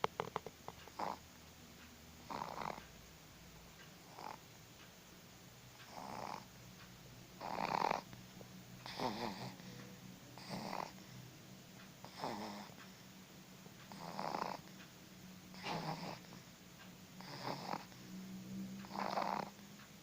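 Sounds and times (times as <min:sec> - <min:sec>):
child snoring: 0:00.9 - 0:01.2, 0:02.2 - 0:02.8, 0:04.0 - 0:04.4, 0:05.8 - 0:06.5, 0:07.4 - 0:08.1, 0:08.8 - 0:09.8, 0:10.4 - 0:11.2, 0:12.0 - 0:12.8, 0:13.9 - 0:14.7, 0:15.5 - 0:16.5, 0:17.2 - 0:19.6.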